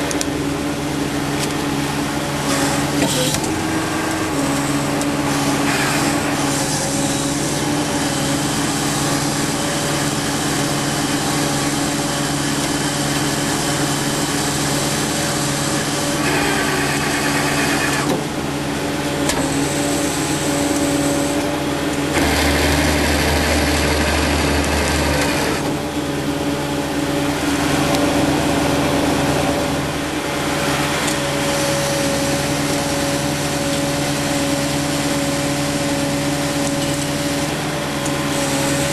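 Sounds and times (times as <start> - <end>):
mechanical noise: 0.0 - 26.2
truck engine running steadily: 0.0 - 38.9.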